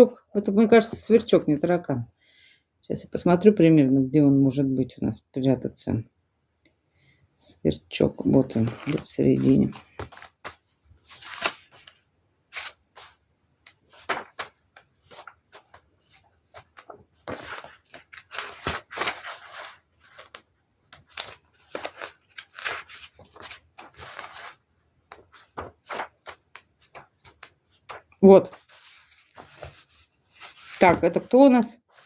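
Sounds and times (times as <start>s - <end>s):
rustling and scraping on table: 13.8s - 20.4s, 25.2s - 32.0s.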